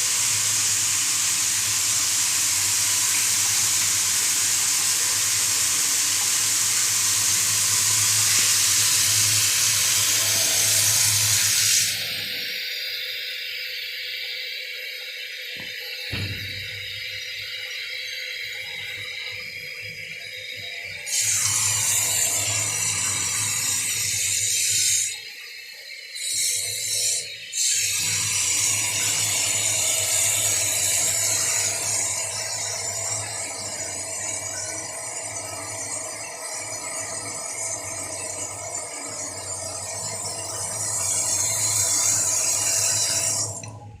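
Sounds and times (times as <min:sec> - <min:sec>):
water running from tap: 0:00.0 - 0:12.4, 0:21.1 - 0:24.9, 0:27.6 - 0:43.8.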